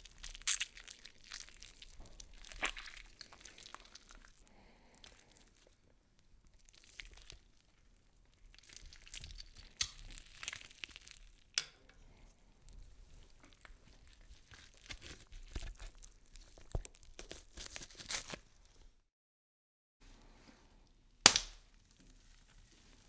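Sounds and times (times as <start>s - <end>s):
crackling and crunching: 0.0s - 5.8s, 6.5s - 11.8s, 13.1s - 19.0s, 21.2s - 22.6s
sharp snaps: 21.2s - 21.6s.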